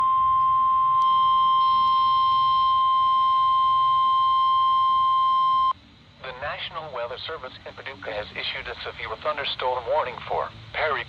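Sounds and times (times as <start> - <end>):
high-pitched alarm tone: 0.0 - 5.8
faint radio static: 6.2 - 11.0.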